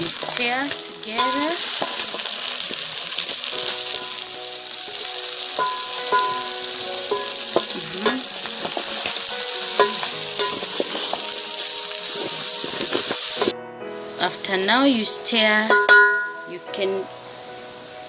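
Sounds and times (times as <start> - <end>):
pork sizzling in fat: 0.0 - 18.0
spoon knocking against pot: 5.6 - 6.5, 7.1 - 8.9, 9.8 - 11.2, 15.7 - 16.5.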